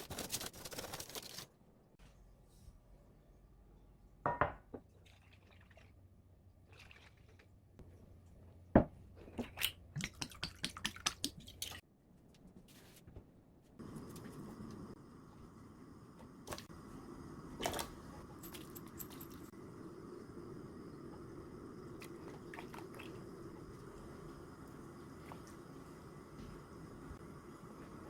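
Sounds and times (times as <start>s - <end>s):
liquid sounds: 16.4s - 27.2s.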